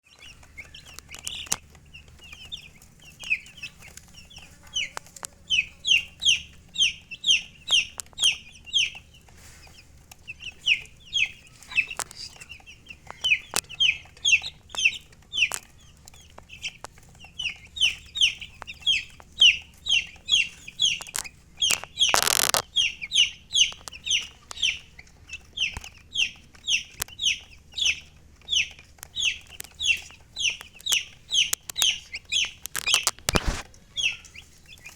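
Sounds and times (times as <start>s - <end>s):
baby chicks peeping: 0.0s - 34.9s
rustling noise: 9.2s - 12.5s, 20.4s - 22.6s, 32.5s - 33.8s.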